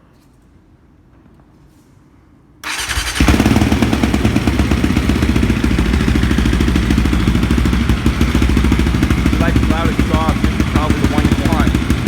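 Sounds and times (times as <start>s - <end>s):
quad engine starting and running: 2.6s - 12.0s.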